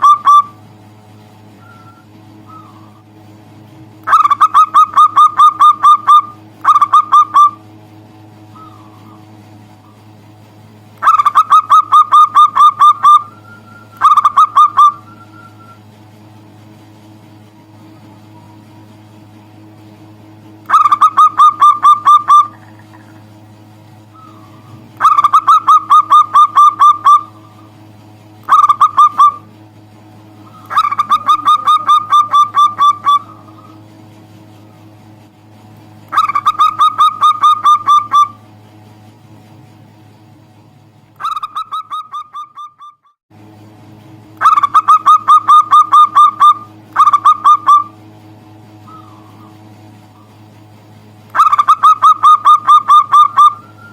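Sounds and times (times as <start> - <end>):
dove cooing: 0.0 - 0.6, 1.6 - 3.1, 4.1 - 7.6, 8.4 - 10.1, 11.0 - 15.9, 20.7 - 23.4, 24.1 - 27.9, 28.5 - 29.6, 30.4 - 33.9, 36.1 - 38.4, 41.2 - 43.0, 44.4 - 48.0, 48.8 - 50.5, 51.3 - 53.9
steady low hum: 0.0 - 53.9.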